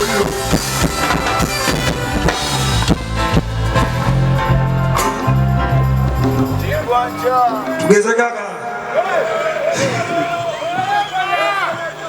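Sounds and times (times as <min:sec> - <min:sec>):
drum kit beat: 0:00.0 - 0:08.0
heavy bass notes: 0:00.0 - 0:08.0
band music through pa: 0:00.0 - 0:12.0.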